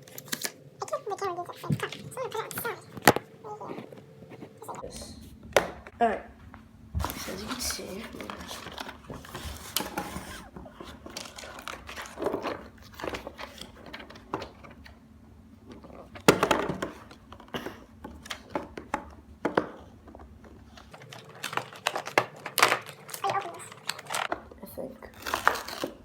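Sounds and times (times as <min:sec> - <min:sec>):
plastic packaging crinkling: 0:00.0 - 0:00.6, 0:07.0 - 0:14.8, 0:20.5 - 0:26.0.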